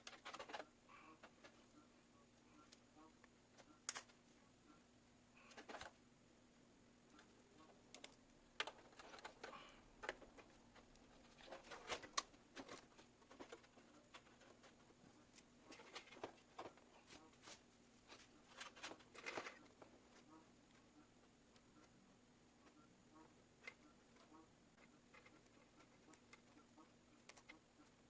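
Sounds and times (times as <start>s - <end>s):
clicks and rustles of handling cables: 0.0s - 1.7s, 2.6s - 4.2s, 5.4s - 6.0s, 7.2s - 22.0s, 23.5s - 28.0s.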